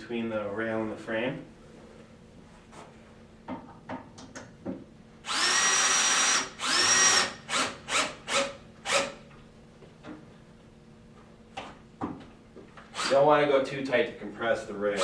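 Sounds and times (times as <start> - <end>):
power drill driving bolt: 12.9 - 13.2.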